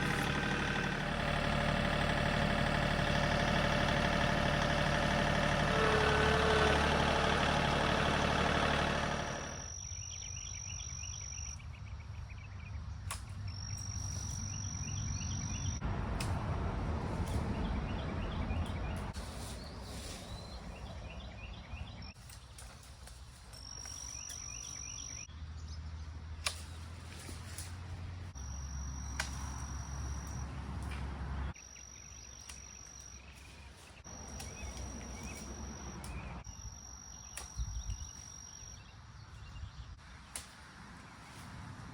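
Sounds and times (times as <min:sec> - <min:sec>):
low engine hum: 0:00.0 - 0:09.7, 0:14.6 - 0:22.2, 0:24.8 - 0:31.6, 0:34.0 - 0:36.5
tractor diesel engine running: 0:00.0 - 0:09.8, 0:27.2 - 0:31.6, 0:33.4 - 0:36.5
insect buzz and chirping: 0:09.6 - 0:11.6, 0:34.2 - 0:38.9.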